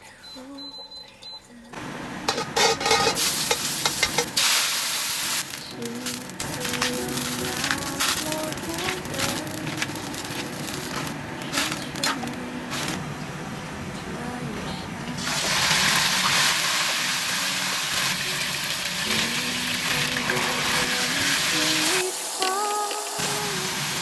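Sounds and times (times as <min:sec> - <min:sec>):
steady rushing hiss: 0:01.8 - 0:13.9, 0:15.2 - 0:24.0
kitchen clatter: 0:02.2 - 0:13.0
song melody: 0:05.5 - 0:15.2.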